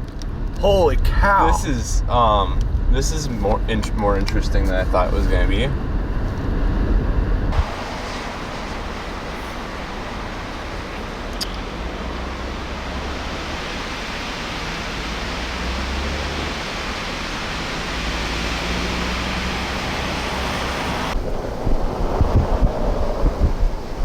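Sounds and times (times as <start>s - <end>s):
wind buffeting microphone: 0.0s - 13.7s, 18.7s - 24.0s
strong wind roaring: 0.0s - 24.0s.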